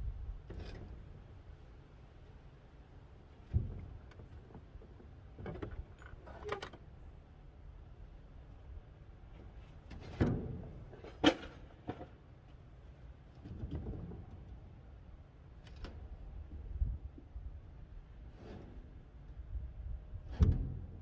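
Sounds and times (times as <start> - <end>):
low steady rumble: 0.0 - 21.0
knocks and clunks: 3.4 - 6.8.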